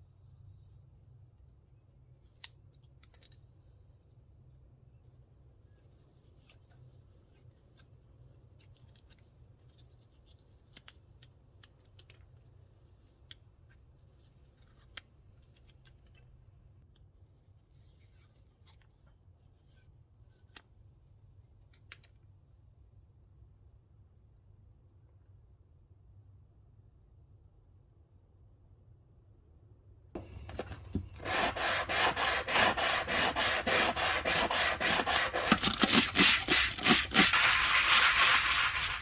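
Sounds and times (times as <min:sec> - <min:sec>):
short scratchy sounds: 0:30.2 - 0:39.0.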